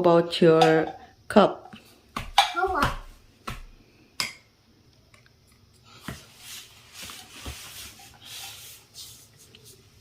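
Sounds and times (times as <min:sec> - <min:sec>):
rustling and scratching: 0:06.0 - 0:10.0.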